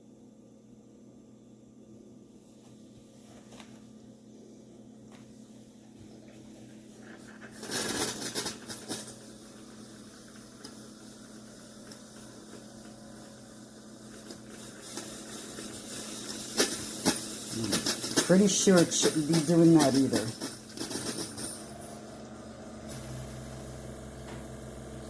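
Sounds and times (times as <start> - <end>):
coffee maker humming: 4.2 - 25.0
steam spitting and hissing: 6.9 - 21.0.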